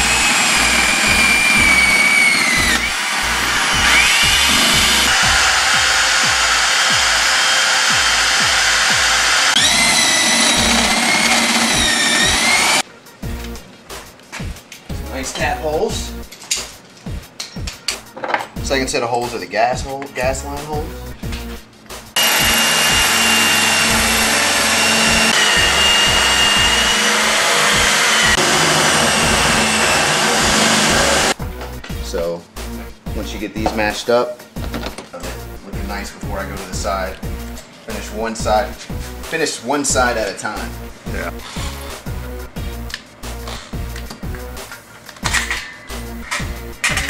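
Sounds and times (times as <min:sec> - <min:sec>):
power drill whining: 0:00.0 - 0:12.8, 0:22.2 - 0:31.4
background music with steady beat: 0:00.0 - 0:47.0.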